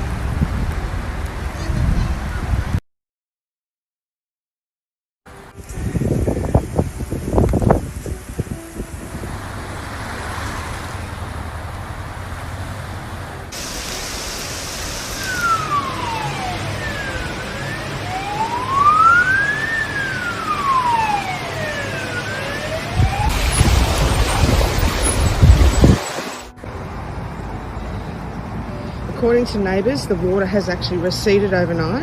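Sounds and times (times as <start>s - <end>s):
low traffic rumble: 0.0s - 2.8s, 5.3s - 32.0s
emergency siren wailing: 14.6s - 26.5s.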